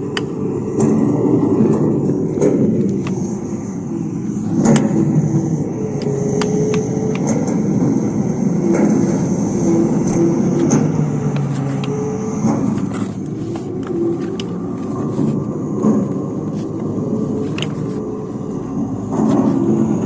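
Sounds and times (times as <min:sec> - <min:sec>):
vehicle motor running: 0:00.0 - 0:20.0
sharp clicks and knocks: 0:04.4 - 0:05.4.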